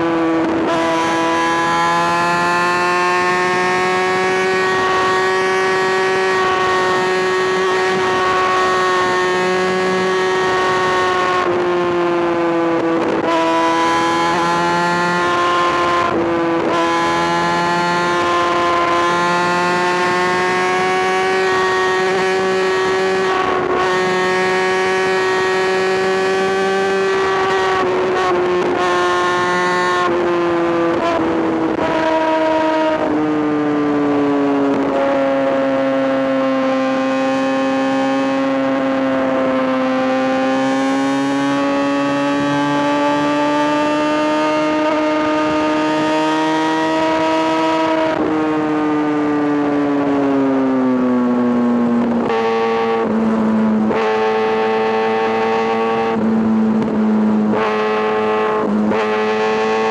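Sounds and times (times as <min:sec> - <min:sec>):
motorcycle engine at high revs: 0:00.0 - 0:59.9.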